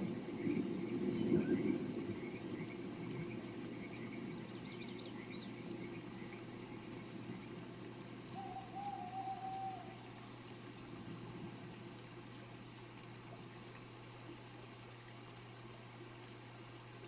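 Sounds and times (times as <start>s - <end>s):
rain hiss: 0.0s - 17.0s
small birds chirping: 0.3s - 10.4s
bird giving long even call: 8.3s - 10.2s.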